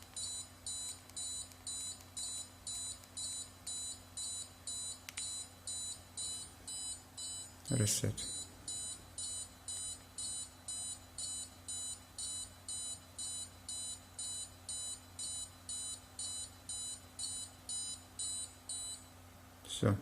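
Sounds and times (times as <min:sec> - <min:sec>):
alarm buzzer beeping: 0:00.2 - 0:19.1.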